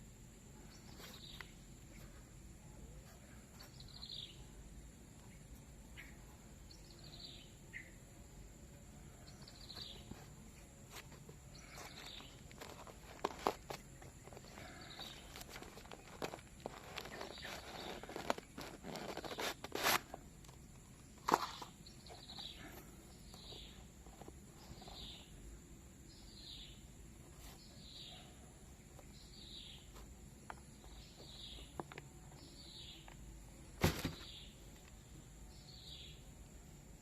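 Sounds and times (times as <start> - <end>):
rustling of packaging: 9.8 - 25.2.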